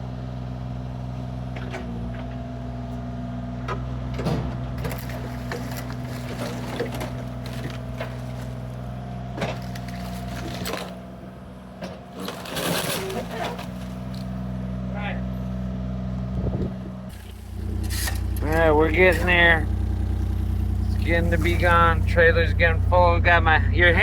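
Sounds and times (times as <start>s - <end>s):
diesel engine running: 0.0s - 24.0s
debris knocking and clattering: 4.3s - 11.0s.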